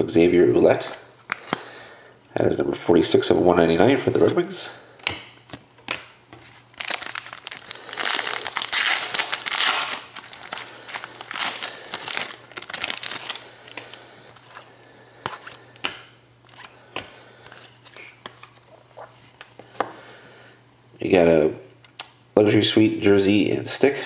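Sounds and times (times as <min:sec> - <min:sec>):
cards rustling and clicking: 0:05.0 - 0:19.6
wrapper crinkling and tearing: 0:06.4 - 0:14.6.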